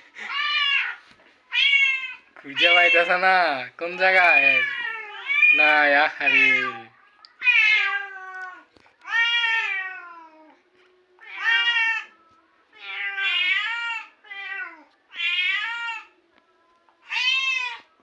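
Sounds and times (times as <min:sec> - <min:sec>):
cat meowing: 0:00.3 - 0:03.2, 0:04.2 - 0:10.5, 0:12.8 - 0:16.2, 0:17.0 - 0:17.9.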